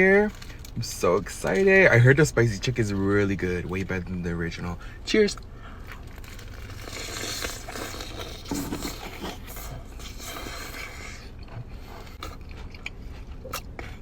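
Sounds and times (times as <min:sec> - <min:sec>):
crunching fried chicken: 0:00.0 - 0:02.7, 0:05.5 - 0:14.0
chewing with crackles: 0:00.1 - 0:02.1, 0:05.4 - 0:14.0.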